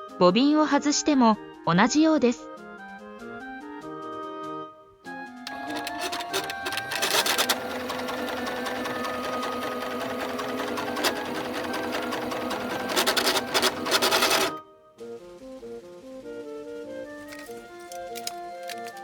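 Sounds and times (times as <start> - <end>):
sewing machine rapid clicking: 5.5 - 14.6.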